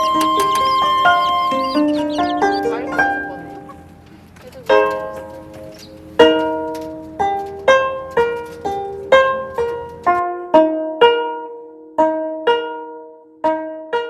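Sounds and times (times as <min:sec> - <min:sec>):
plucked string instrument music: 0:00.0 - 0:14.0.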